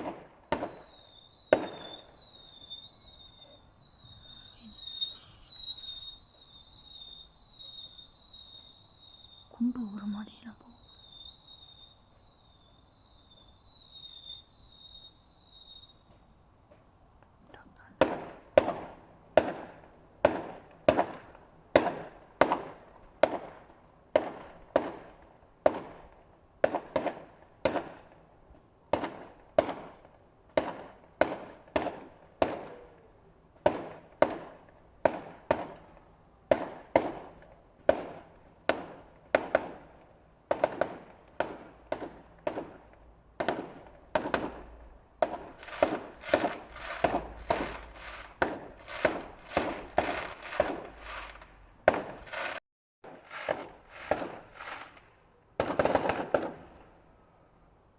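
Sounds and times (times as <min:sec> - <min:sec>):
fireworks bangs with echo: 0:00.0 - 0:03.2, 0:18.0 - 0:28.2, 0:28.9 - 0:33.0, 0:33.6 - 0:56.9.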